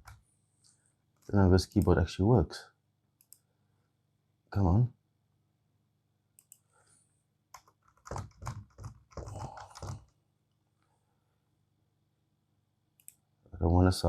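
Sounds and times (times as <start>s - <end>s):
keyboard typing: 7.5s - 10.2s.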